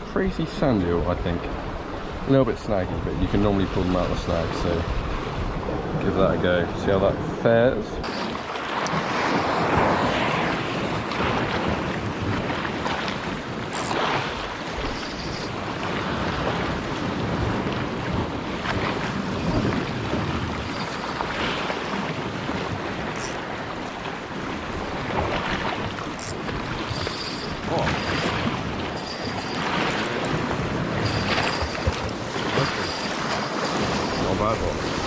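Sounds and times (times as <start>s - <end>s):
sea waves washing: 0.0s - 35.0s
wind on microphone: 0.0s - 35.0s.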